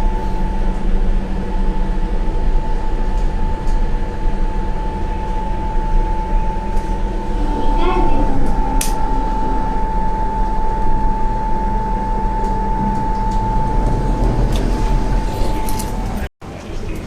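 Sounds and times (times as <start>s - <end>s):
low rumble: 0.0s - 16.3s
high-pitched speaker tone: 3.0s - 16.3s.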